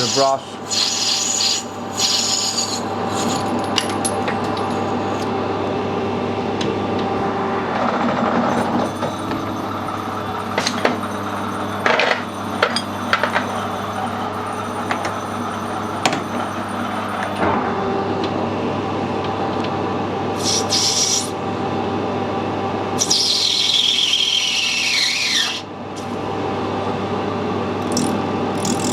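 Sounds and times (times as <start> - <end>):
cutting tool scraping metal: 0.0 - 3.6, 27.8 - 28.9
metal lathe humming: 0.0 - 27.1, 27.8 - 28.9.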